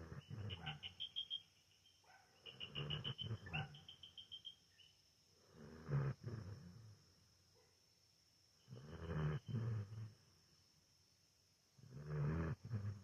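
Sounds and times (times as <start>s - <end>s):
dog snoring with squeaky whistle: 0.0s - 1.4s, 2.5s - 4.4s, 5.6s - 6.8s, 8.6s - 10.1s, 11.8s - 13.0s.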